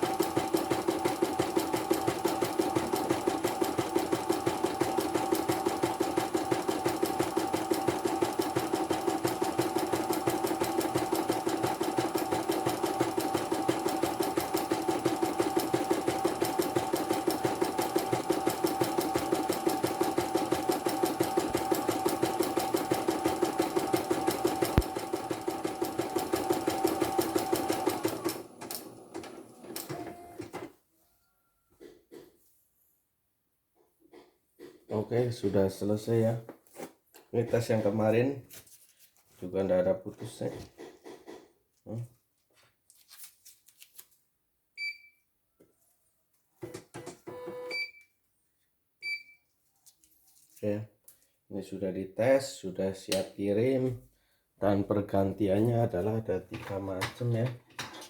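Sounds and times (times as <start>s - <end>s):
embroidery machine stitching: 0.0s - 30.7s.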